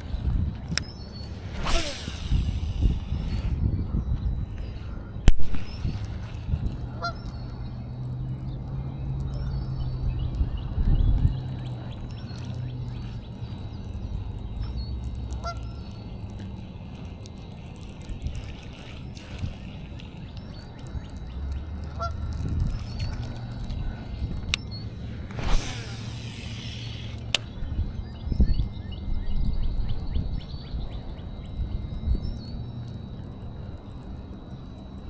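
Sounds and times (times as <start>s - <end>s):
steady low rumble: 0.0s - 35.0s
bird honks: 6.9s - 7.5s, 15.4s - 15.7s, 21.9s - 23.4s.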